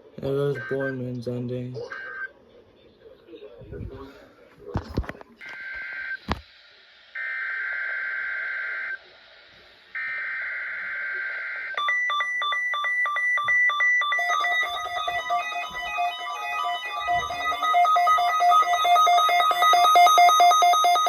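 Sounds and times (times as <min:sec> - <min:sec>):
chiming electronic tune: 0:11.8 - 0:21.0.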